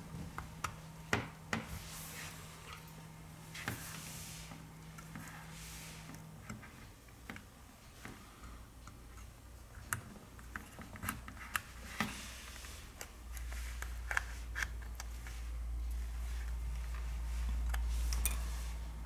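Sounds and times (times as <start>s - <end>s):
low steady hum: 13.3s - 19.0s.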